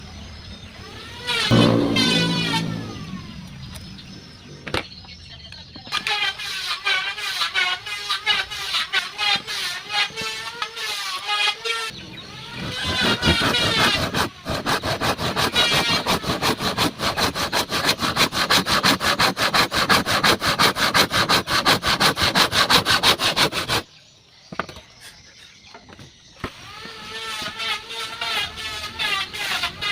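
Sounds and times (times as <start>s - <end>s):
hand saw cutting wood: 6.0s - 11.9s, 12.6s - 23.9s, 26.6s - 29.9s.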